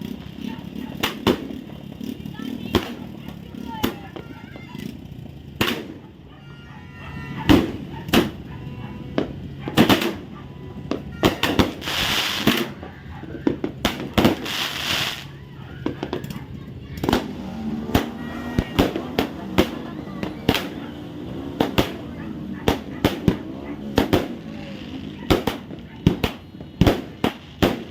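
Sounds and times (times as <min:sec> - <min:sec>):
firework bangs: 0:00.0 - 0:06.3, 0:07.2 - 0:27.9
hissing crackling firework bursts: 0:11.4 - 0:12.8, 0:13.4 - 0:16.3.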